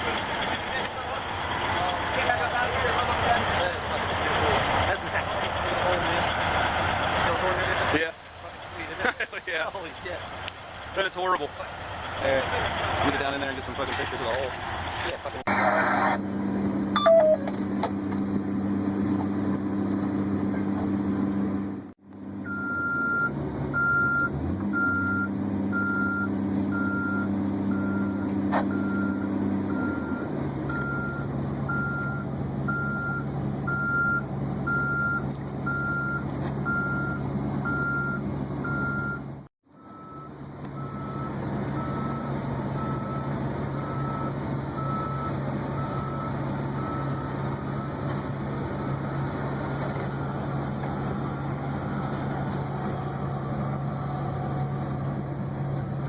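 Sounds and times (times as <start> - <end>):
heavy machine engine running: 11.7 - 56.0
backup alarm beeping: 17.0 - 17.6.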